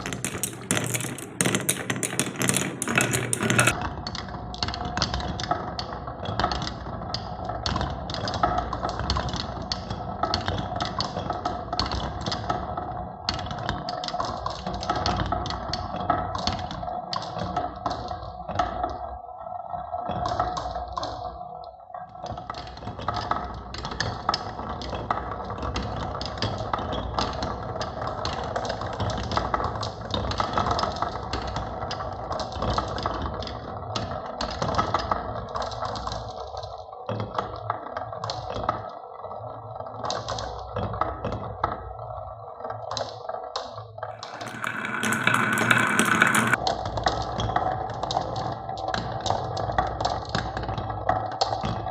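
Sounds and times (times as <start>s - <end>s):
marbles clattering down wooden run: 0.0s - 3.8s, 44.2s - 46.6s.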